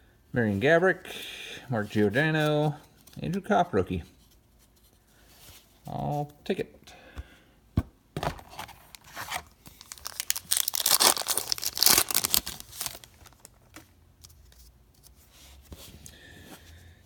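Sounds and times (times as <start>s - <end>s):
wrapper rustling: 8.5s - 13.9s
wrapper tearing and crinkling: 8.9s - 13.7s.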